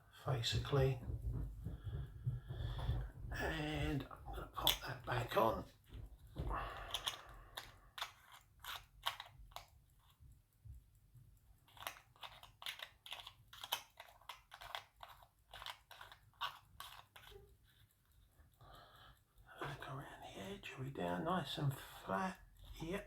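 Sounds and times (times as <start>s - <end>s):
small clicks and crunchy scrapes: 3.7s - 10.2s, 11.6s - 18.3s.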